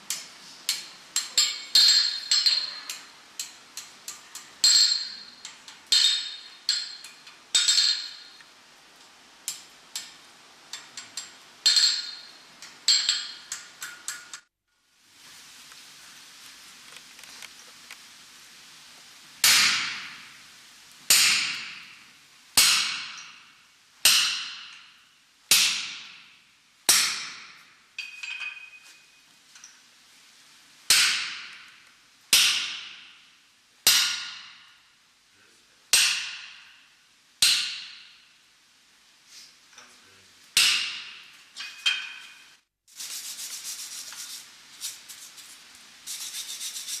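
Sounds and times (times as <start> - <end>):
hammer striking anvil: 21.1 - 22.0, 22.6 - 23.5, 24.1 - 26.3, 26.9 - 28.8, 30.9 - 31.7, 32.4 - 33.2, 33.9 - 34.7, 35.9 - 36.8, 37.4 - 38.2, 40.6 - 42.4.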